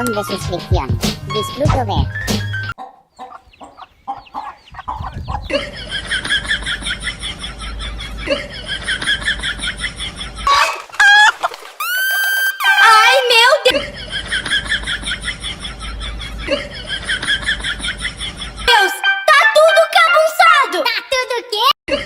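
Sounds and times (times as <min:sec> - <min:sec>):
chickens clucking: 0:02.1 - 0:07.5, 0:09.3 - 0:12.6.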